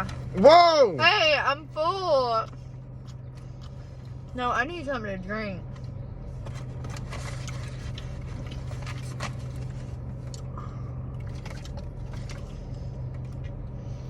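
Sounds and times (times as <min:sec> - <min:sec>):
low hum: 0:00.0 - 0:14.0
eating and handling food: 0:02.2 - 0:04.8, 0:05.6 - 0:13.8.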